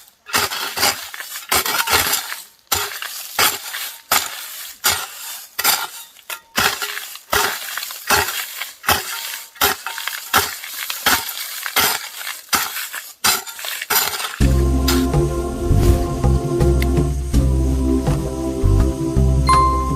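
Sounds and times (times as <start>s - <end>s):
hoe chopping into soil: 0.0s - 15.1s
crunching scrape of earth: 0.0s - 15.2s.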